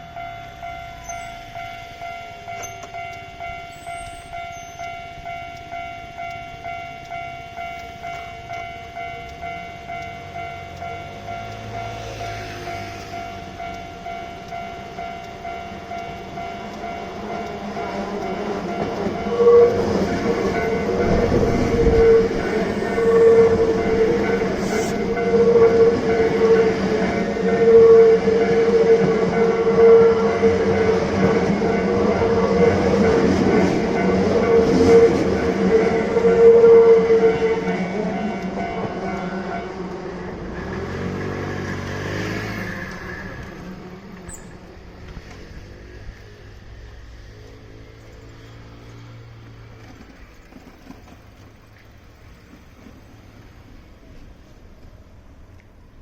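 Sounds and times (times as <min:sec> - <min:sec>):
level crossing bell ringing: 0:00.0 - 0:36.7
steady pitched tone: 0:00.0 - 0:40.7
train rumbling: 0:00.0 - 0:56.0.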